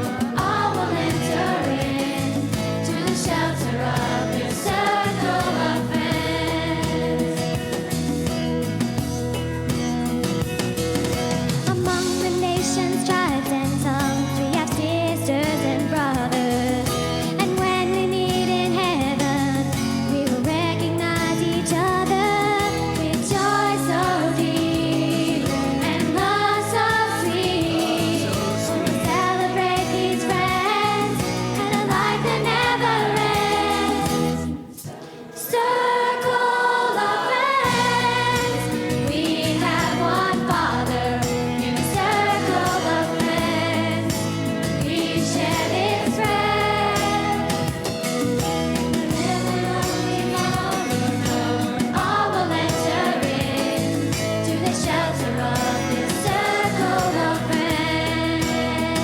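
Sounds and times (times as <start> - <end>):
youth choir singing: 0.0 - 7.8, 21.0 - 59.0
instrumental accompaniment: 0.0 - 34.9, 37.0 - 59.0.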